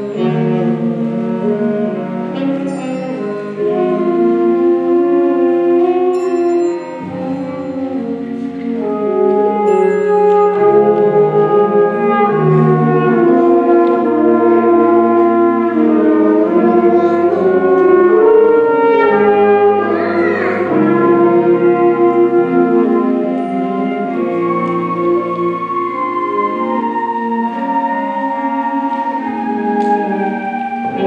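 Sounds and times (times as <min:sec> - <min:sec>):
concert band playing: 0:00.0 - 0:31.0
bell-like strikes: 0:02.7 - 0:03.8, 0:06.2 - 0:08.8, 0:09.7 - 0:11.0.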